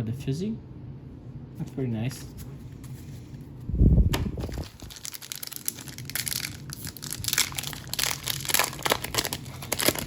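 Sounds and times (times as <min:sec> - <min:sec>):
wrapper crinkling and tearing: 0:04.4 - 0:10.0.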